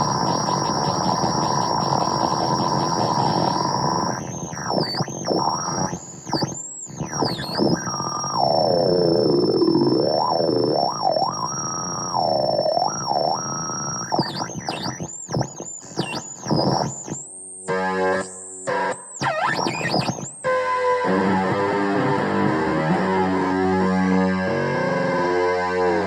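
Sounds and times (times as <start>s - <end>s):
fuzz electric guitar squeals: 19.2s - 20.2s.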